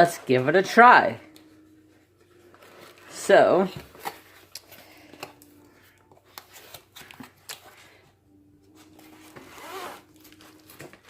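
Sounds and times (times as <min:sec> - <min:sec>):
packaging rustling: 0:02.2 - 0:08.0, 0:08.7 - 0:11.0.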